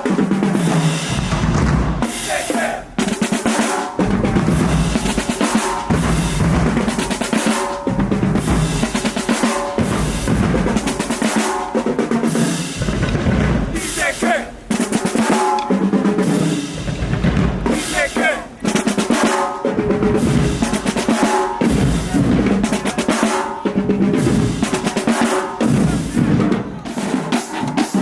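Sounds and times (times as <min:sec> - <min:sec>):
snare drum rolls: 0:00.0 - 0:28.0
bass drum hits: 0:12.8 - 0:13.8.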